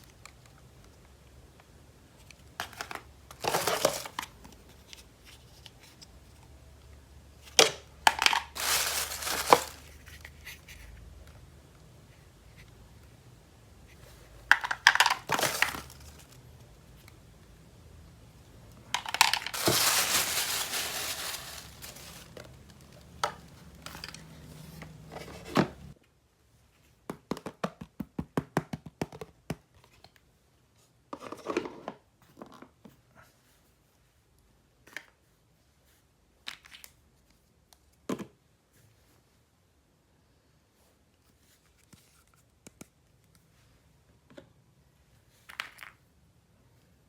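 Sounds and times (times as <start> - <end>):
packaging tearing and crinkling: 8.2 - 10.1, 15.0 - 16.4, 19.0 - 22.4.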